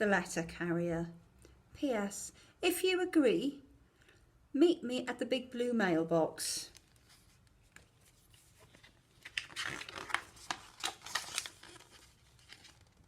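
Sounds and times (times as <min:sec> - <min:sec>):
paper pages rustling and turning: 0:06.7 - 0:13.0.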